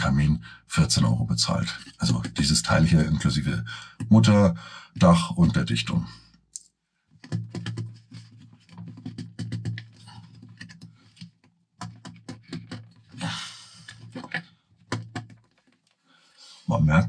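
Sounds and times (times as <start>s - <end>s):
plastic rasp: 1.5s - 3.2s, 7.2s - 16.7s
plastic clicks and scrapes: 1.6s - 3.1s, 7.2s - 13.2s, 13.8s - 16.0s.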